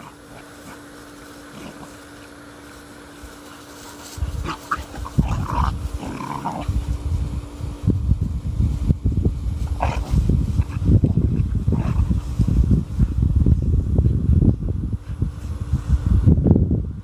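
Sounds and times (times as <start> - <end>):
puppies growling: 0.0 - 7.1, 9.6 - 12.4.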